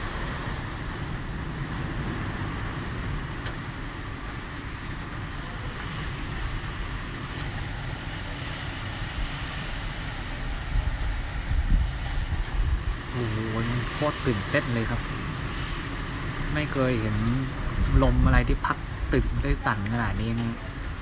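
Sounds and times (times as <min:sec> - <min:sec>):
wind gusting against building: 0:00.0 - 0:21.0.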